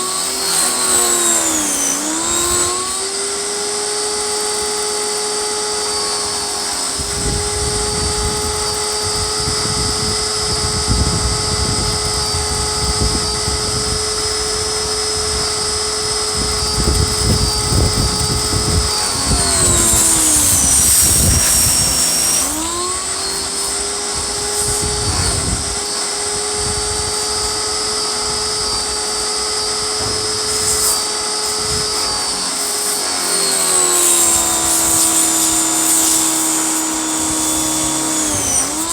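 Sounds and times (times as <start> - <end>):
pressure washer motor whine: 0.0 - 38.9
water spray hissing: 30.6 - 38.9.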